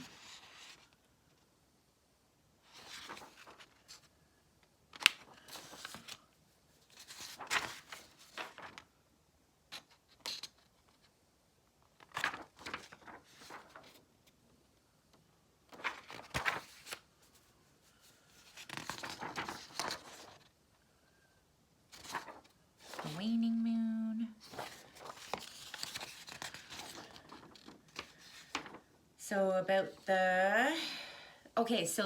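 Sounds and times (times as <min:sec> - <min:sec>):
paper rustling and crinkling: 0:02.6 - 0:04.1, 0:04.9 - 0:08.9, 0:09.7 - 0:11.2, 0:11.8 - 0:14.4, 0:15.7 - 0:20.6, 0:21.9 - 0:23.5, 0:24.4 - 0:29.0.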